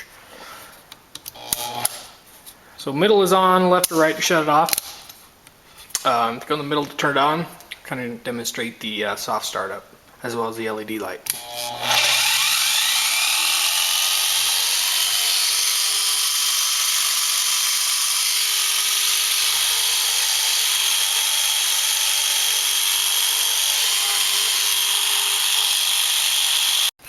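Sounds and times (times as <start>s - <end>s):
jigsaw motor whine: 1.4s - 2.1s, 11.4s - 26.9s.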